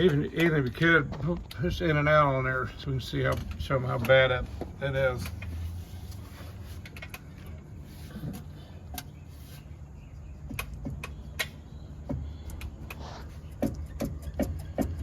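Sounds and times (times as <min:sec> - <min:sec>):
suspension joint clicking and knocking: 0:00.0 - 0:02.2, 0:03.1 - 0:05.6, 0:10.3 - 0:15.0.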